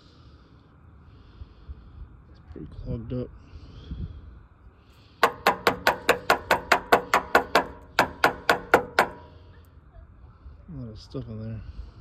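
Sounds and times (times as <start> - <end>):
hard ringing knocks: 5.2 - 9.4.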